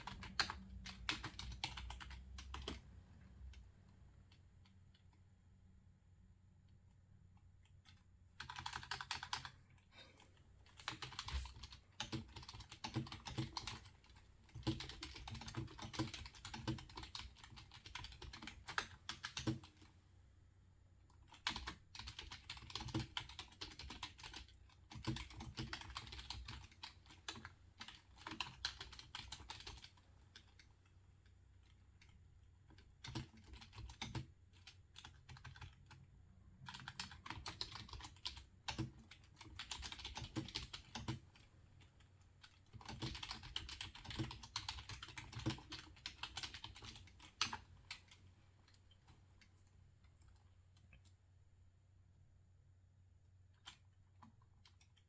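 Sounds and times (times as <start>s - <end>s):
computer keyboard typing: 0.0s - 5.2s, 7.6s - 20.0s, 21.1s - 30.9s, 31.6s - 49.5s, 53.5s - 55.0s.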